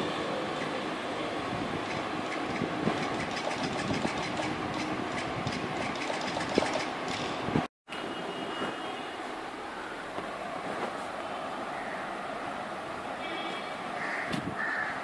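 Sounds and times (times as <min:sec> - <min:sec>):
toy car motor rattle: 0:01.9 - 0:07.3.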